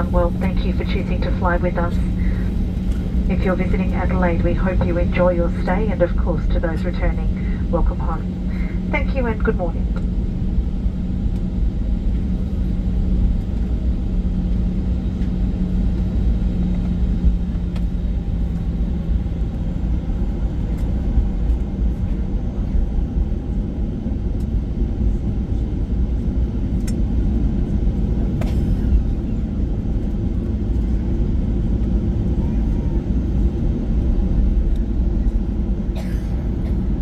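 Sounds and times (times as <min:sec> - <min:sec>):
steady hum: 0:00.0 - 0:11.0
aircraft cabin engine rumble: 0:00.0 - 0:37.0.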